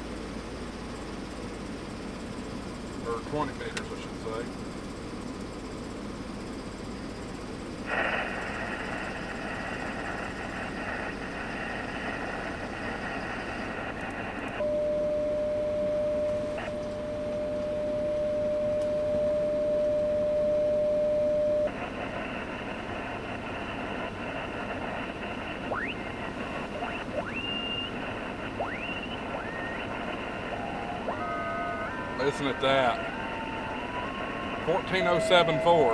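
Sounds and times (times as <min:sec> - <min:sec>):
radio static hiss: 0:03.0 - 0:04.6, 0:07.8 - 0:14.6, 0:21.3 - 0:35.9
steady radio tone: 0:07.8 - 0:35.9
rising whistles: 0:27.2 - 0:35.9.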